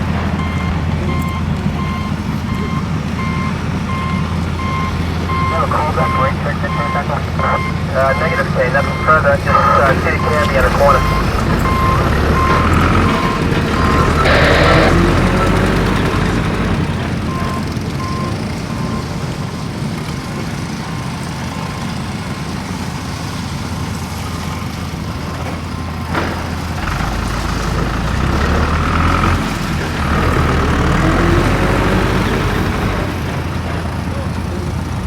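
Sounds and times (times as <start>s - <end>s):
off-road vehicle engine rumbling: 0.0s - 35.0s
short beeps: 0.4s - 14.9s.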